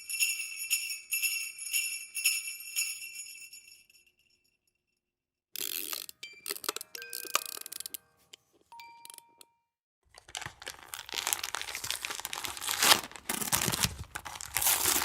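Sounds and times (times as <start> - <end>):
jingle bells shaking: 0.0 - 4.4
crackling rustling with clicks: 10.1 - 15.0.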